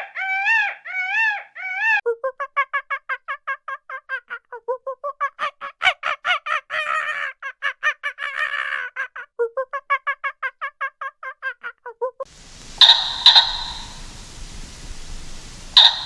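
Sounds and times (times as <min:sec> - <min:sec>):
loud sharp animal call: 0:12.7 - 0:14.8, 0:15.4 - 0:16.0
animal calling in short pitched notes: 0:12.8 - 0:14.1, 0:15.8 - 0:16.0.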